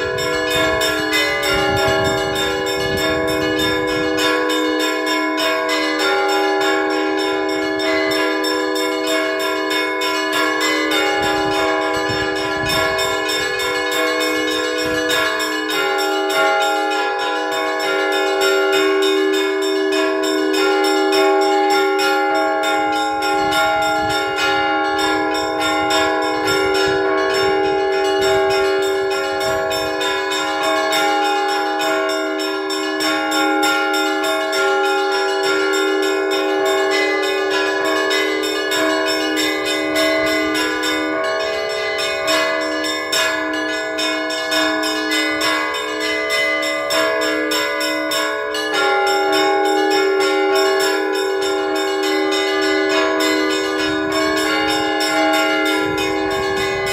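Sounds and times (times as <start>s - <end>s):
large bells ringing: 0.0s - 56.9s
small bells struck rapidly: 0.0s - 56.9s.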